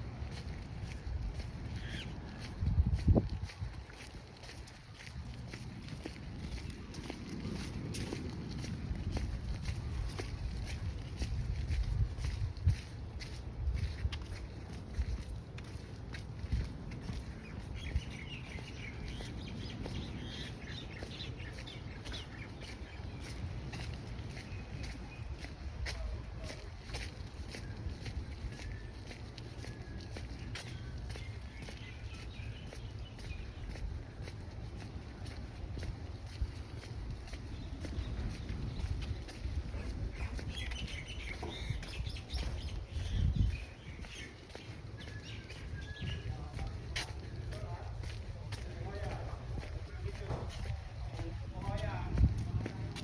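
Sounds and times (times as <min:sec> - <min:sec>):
birds chirping and calling: 0:00.3 - 0:02.6, 0:06.1 - 0:52.8
low rumble of surf: 0:04.9 - 0:13.6.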